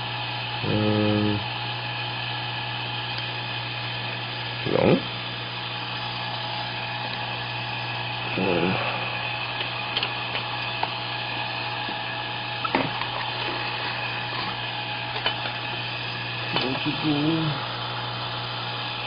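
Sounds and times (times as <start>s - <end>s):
machine hum with faint whine: 0.0s - 19.0s
murmured voice: 0.6s - 1.5s, 8.3s - 9.1s, 16.6s - 17.6s.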